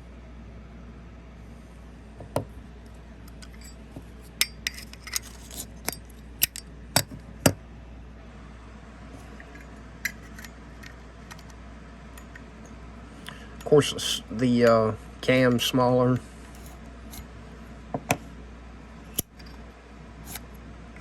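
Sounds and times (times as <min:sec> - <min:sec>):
steady low hum: 0:00.0 - 0:21.0
metal lighter parts clicking: 0:04.4 - 0:07.1, 0:09.4 - 0:11.5, 0:19.1 - 0:19.6, 0:20.2 - 0:20.5.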